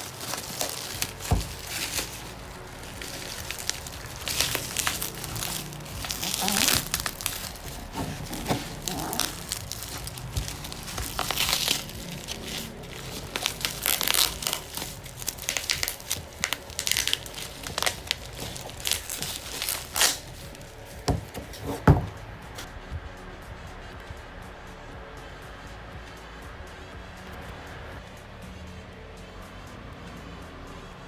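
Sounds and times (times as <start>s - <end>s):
packaging crinkling and tearing: 0.0s - 22.2s.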